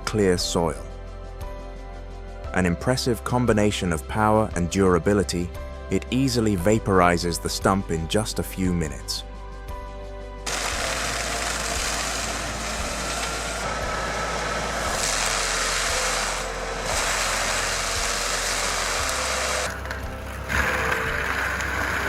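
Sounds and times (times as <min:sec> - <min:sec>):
mulcher grinding a tree stump: 0:10.5 - 0:22.0.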